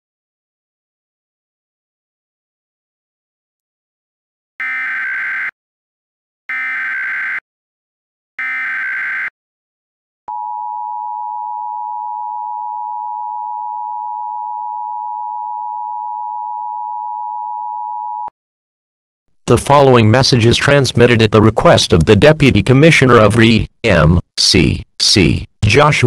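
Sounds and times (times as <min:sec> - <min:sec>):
digital data screech: 0:04.6 - 0:05.5, 0:06.5 - 0:07.4, 0:08.4 - 0:09.3.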